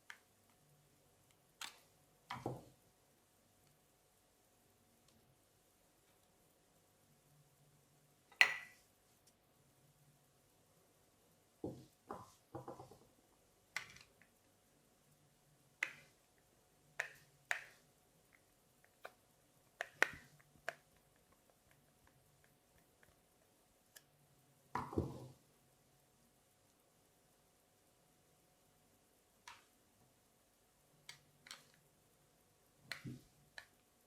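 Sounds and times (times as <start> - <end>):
clicks of small parts and tools: 31.1 - 31.8.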